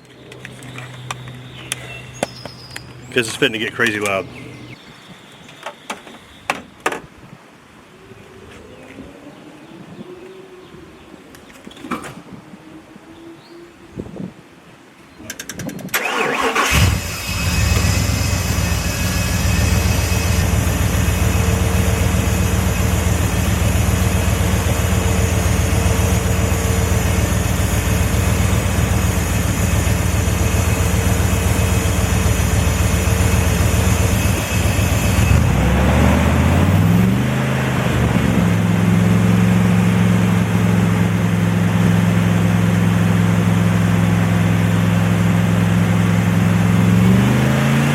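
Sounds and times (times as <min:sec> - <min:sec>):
truck engine starting and revving: 0:03.0 - 0:04.8, 0:15.9 - 0:47.9.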